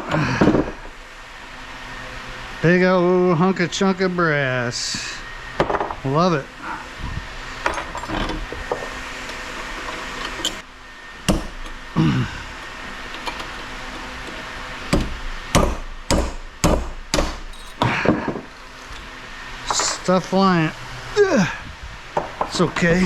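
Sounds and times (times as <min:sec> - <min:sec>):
hammer striking brass: 0:17.2 - 0:17.9.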